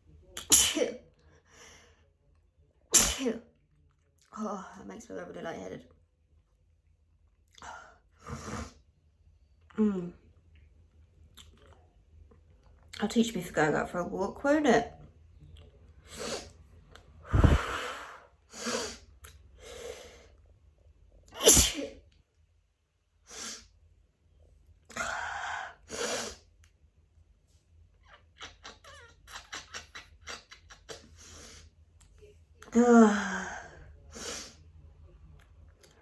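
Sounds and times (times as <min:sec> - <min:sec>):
person sneezing: 0:00.4 - 0:00.9, 0:02.9 - 0:03.4, 0:21.4 - 0:22.0
short quick breaths: 0:17.2 - 0:19.0.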